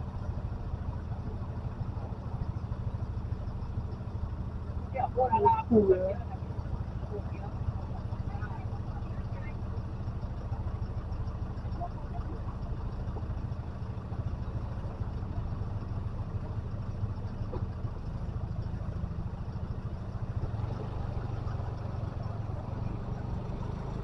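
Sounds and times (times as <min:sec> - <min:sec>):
vehicle engine humming: 0:00.0 - 0:24.0.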